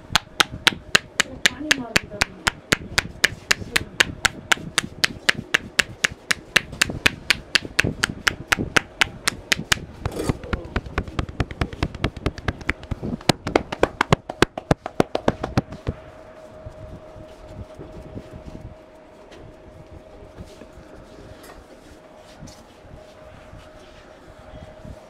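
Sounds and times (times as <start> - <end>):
hand slaps of head massage: 0.2 - 15.8.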